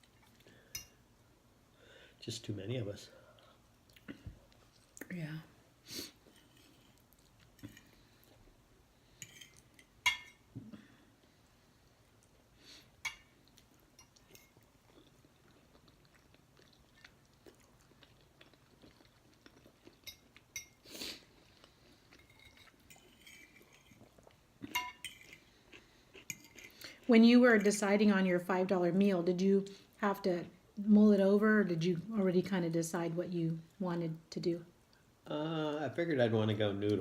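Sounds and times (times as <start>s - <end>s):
soft chewing: 0.0s - 1.1s, 3.1s - 5.1s, 6.0s - 27.7s
cutlery clinking on dishes: 9.2s - 10.5s, 24.6s - 25.4s.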